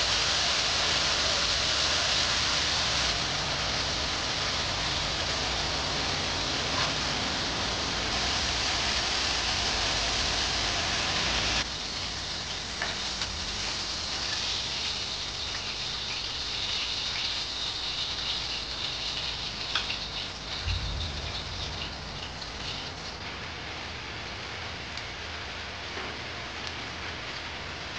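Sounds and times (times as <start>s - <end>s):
steady rain falling: 0.0s - 27.9s.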